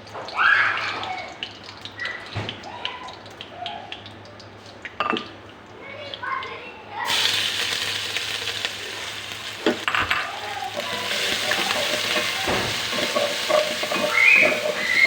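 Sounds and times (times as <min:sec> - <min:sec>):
food sizzling in hot oil: 0:07.0 - 0:15.0
utensil clicking against pan: 0:09.6 - 0:15.0.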